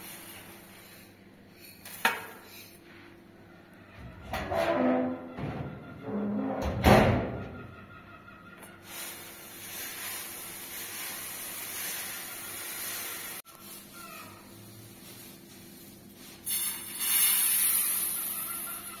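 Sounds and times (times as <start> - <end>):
steady hiss: 8.9 - 13.8, 14.6 - 18.4.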